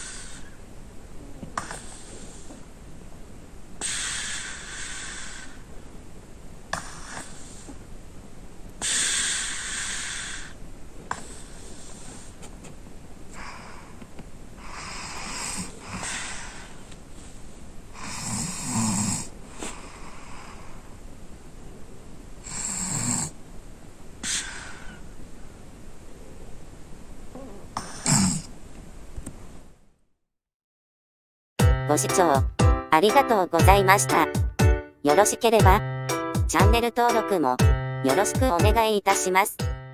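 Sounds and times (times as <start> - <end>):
child snoring: 14.6 - 16.6, 18.0 - 20.7, 22.4 - 23.4, 27.3 - 28.5.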